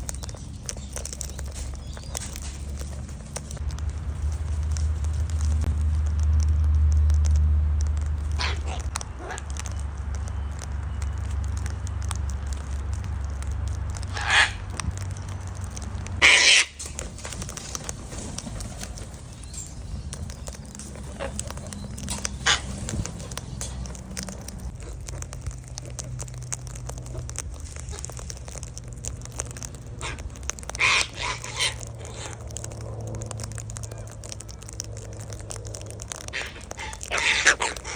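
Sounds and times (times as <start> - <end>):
low steady rumble: 0.0 - 37.9
cockatoos screeching: 8.3 - 9.7, 14.0 - 14.8, 16.2 - 19.9, 20.5 - 24.4, 30.0 - 32.7, 35.6 - 37.9.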